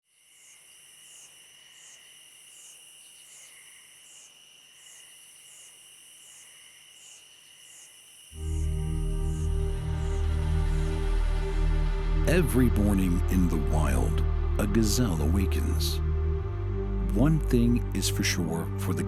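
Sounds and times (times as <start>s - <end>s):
insects chirping: 0.1s - 12.2s
loud music: 8.4s - 19.0s.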